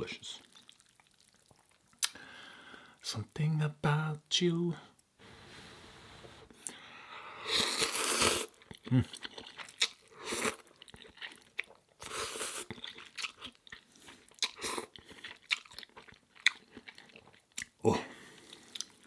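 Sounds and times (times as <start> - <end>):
chewing and mouth clicks: 0.5 - 2.2, 7.8 - 17.8, 18.4 - 19.0
person slurping noodles: 7.4 - 10.6, 12.0 - 12.7.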